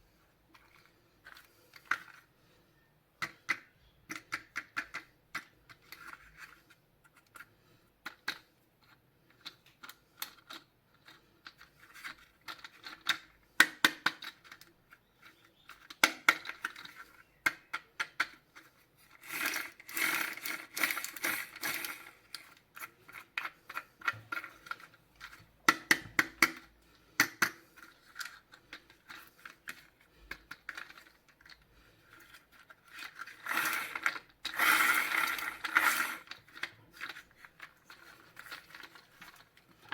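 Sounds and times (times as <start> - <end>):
small clicks and taps: 3.2 - 18.8, 21.0 - 33.2
packaging scraping and tearing: 32.2 - 39.9.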